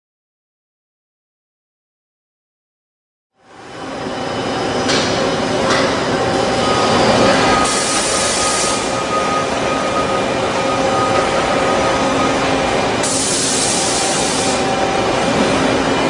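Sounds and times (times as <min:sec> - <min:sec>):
lathe machine hum: 0:03.4 - 0:16.0
hissing spray: 0:13.0 - 0:14.7.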